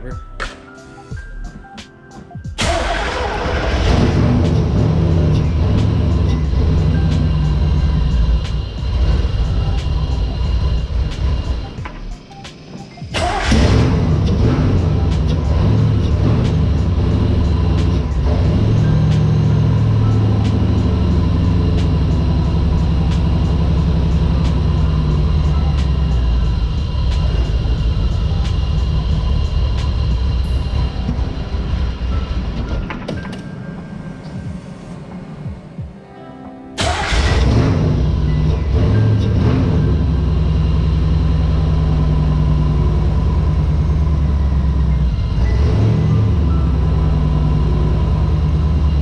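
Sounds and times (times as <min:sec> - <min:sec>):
car engine idling with misfire: 0:02.6 - 0:12.2, 0:13.1 - 0:32.8, 0:36.8 - 0:49.0.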